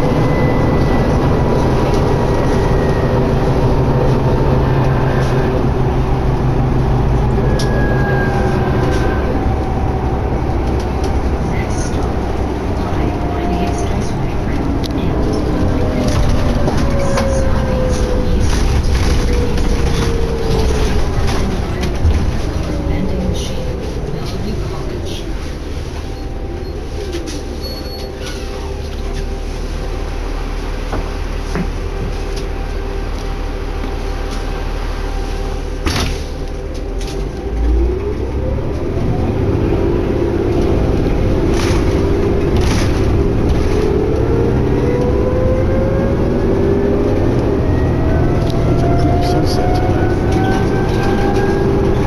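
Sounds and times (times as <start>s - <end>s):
bus engine drone: 0.0s - 52.0s
road noise: 0.0s - 52.0s
faint cabin rattles and clicks: 8.7s - 29.9s, 30.6s - 34.6s, 40.1s - 45.2s.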